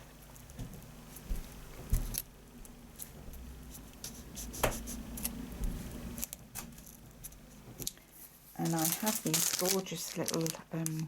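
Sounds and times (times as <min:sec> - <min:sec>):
hands handling paper and card: 0:03.0 - 0:11.0.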